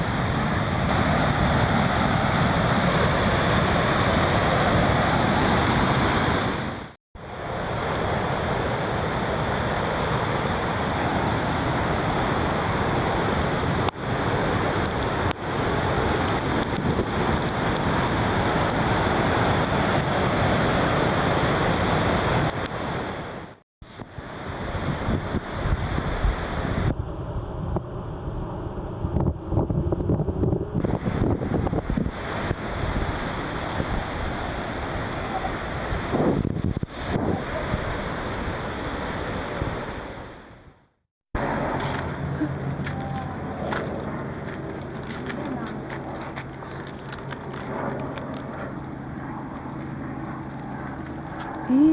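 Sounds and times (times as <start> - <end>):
waterfall roaring: 0.0 - 26.8.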